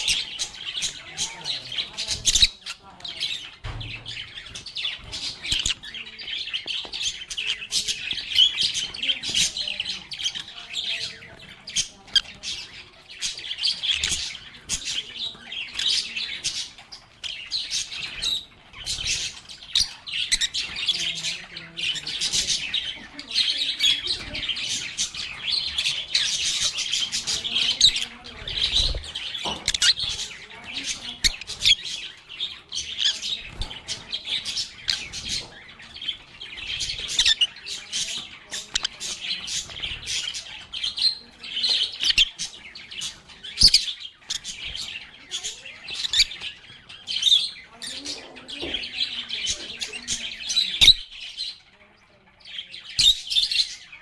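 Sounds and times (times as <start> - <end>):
lovebirds chirping and squawking: 0.0 - 54.0.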